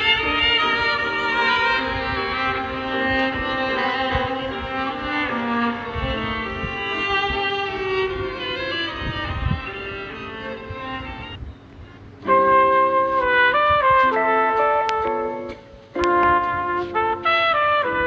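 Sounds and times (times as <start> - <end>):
phone ringtone melody: 9.7 - 11.4.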